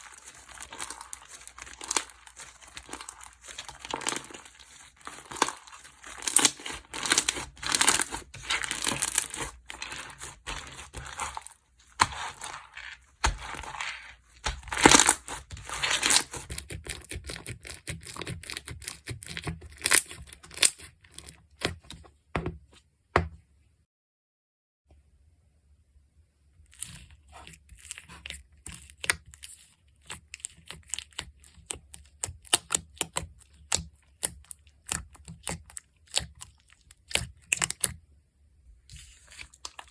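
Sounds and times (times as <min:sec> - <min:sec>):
slime crackling and popping: 0:00.0 - 0:16.6.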